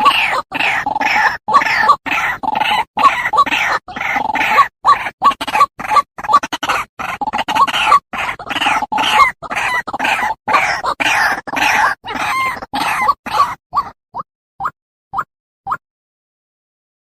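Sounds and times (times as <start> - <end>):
bird croaking calls: 0.0 - 14.0.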